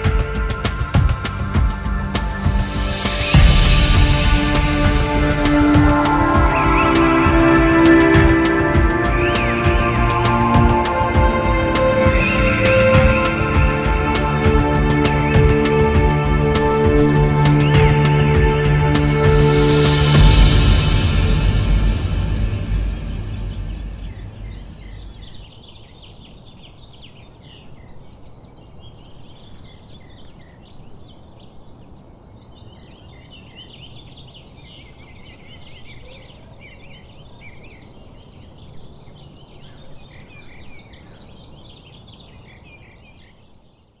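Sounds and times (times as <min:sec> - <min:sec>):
music: 0:00.0 - 0:25.3
birds chirping and trilling: 0:00.0 - 0:44.0
low background noise: 0:00.0 - 0:44.0.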